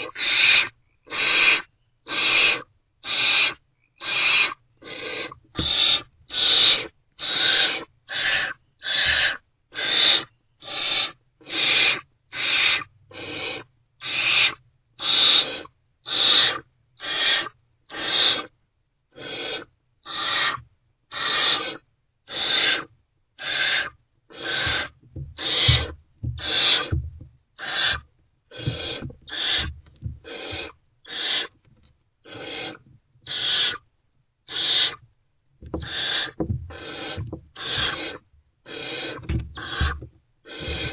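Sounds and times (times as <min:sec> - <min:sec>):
owlets hissing begging calls: 0:00.0 - 0:18.5, 0:23.4 - 0:27.0, 0:27.6 - 0:29.7, 0:30.3 - 0:31.5, 0:32.3 - 0:33.8, 0:34.5 - 0:35.0, 0:35.8 - 0:40.9.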